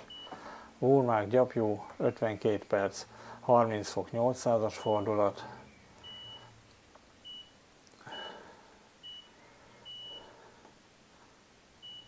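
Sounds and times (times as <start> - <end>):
washing machine beeps: 0.0 - 0.4, 4.7 - 5.2, 6.0 - 6.5, 7.2 - 8.4, 9.0 - 10.3, 11.8 - 12.0.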